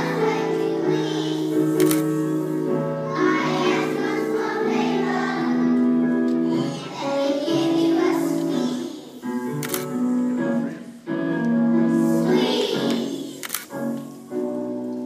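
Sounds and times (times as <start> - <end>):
children singing together: 0.0 - 9.4, 11.9 - 13.4.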